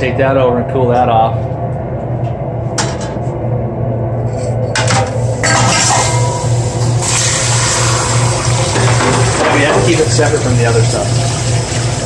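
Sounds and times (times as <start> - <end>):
constant low hum: 0.0 - 12.0
water hissing on hot metal: 6.4 - 12.0.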